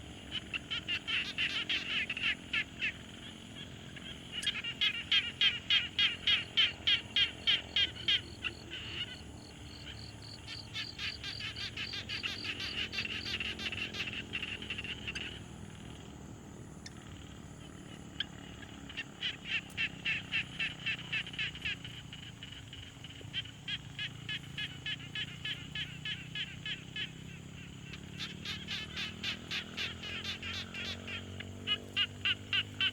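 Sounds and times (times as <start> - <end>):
frogs croaking in chorus: 0.0 - 32.9.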